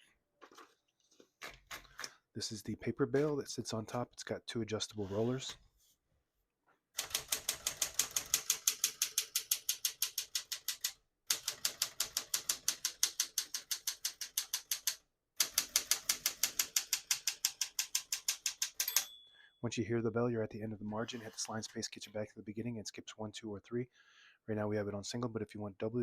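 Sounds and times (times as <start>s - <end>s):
manual typewriter keystrokes: 7.0s - 19.2s
typewriter margin bell ding: 18.8s - 19.5s.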